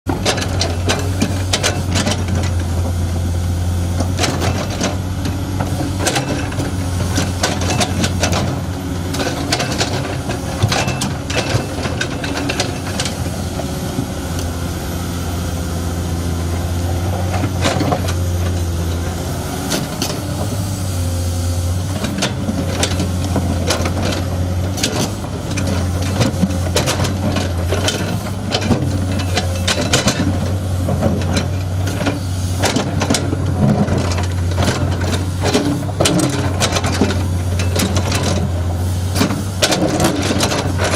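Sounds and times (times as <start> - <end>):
diesel engine under load: 0.1 - 40.9.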